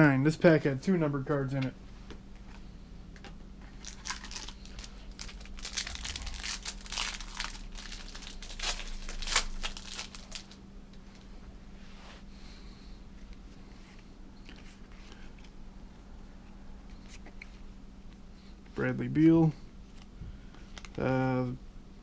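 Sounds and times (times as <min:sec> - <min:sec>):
plastic wrapper crinkling and tearing: 0:03.7 - 0:10.6.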